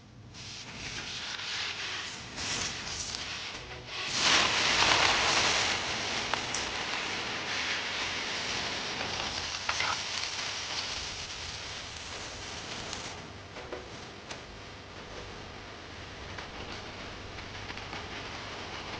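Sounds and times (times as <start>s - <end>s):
food sizzling in hot oil: 0.4s - 13.7s.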